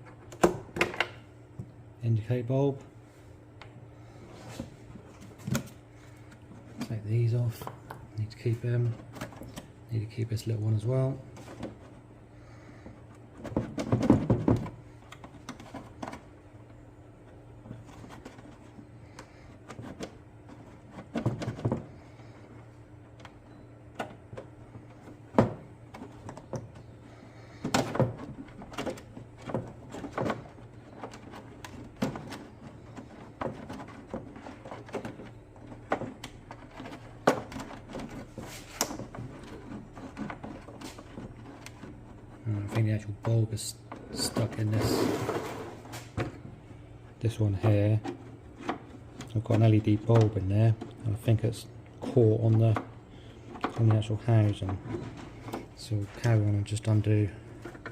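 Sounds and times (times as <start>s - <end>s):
faint steady hum: 0.0s - 57.9s
plastic parts clicking and rattling: 27.5s - 44.8s.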